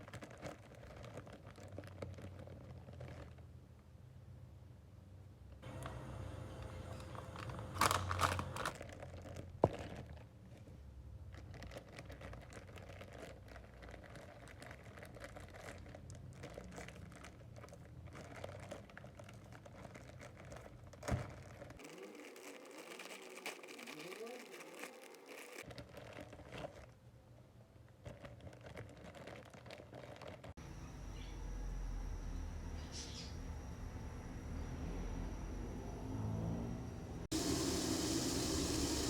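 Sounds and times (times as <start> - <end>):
crinkling and rustling handling: 0.0 - 4.0, 6.9 - 30.6.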